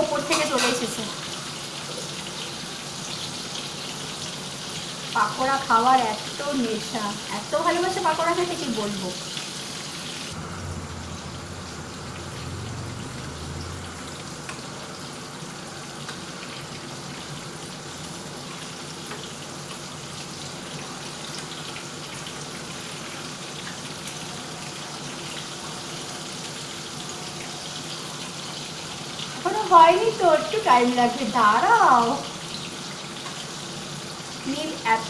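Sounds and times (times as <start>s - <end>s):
food deep-frying in oil: 0.0s - 35.0s.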